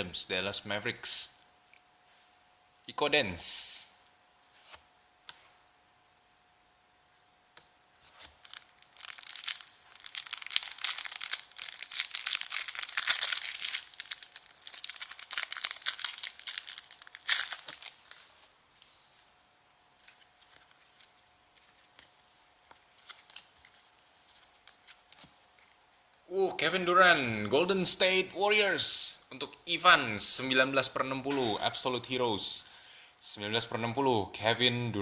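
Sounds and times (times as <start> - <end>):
wrapper tearing and crinkling: 8.1 - 18.5.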